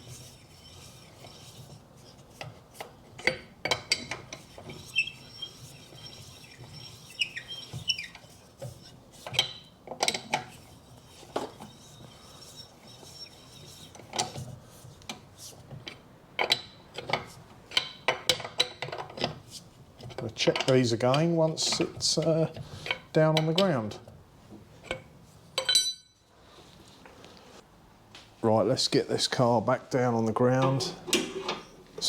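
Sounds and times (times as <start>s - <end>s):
wheel brace clinking on bolts: 2.4s - 14.5s, 24.8s - 26.3s
metallic ringing: 25.6s - 26.3s.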